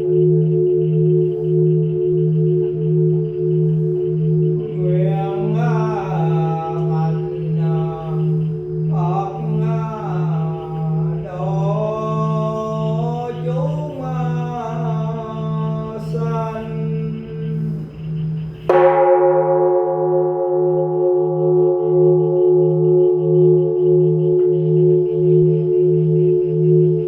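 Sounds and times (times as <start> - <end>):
low pulsing drone: 0.0 - 27.0
temple bell ringing: 2.9 - 27.0
person chanting: 4.0 - 19.0.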